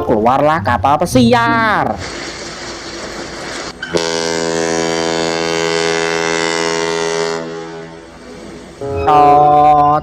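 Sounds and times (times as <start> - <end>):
ship's horn blast: 3.8 - 9.9.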